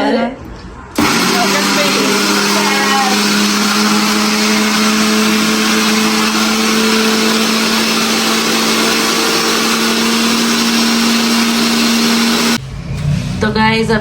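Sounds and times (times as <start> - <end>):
mixer grinder motor hum: 1.0 - 12.6.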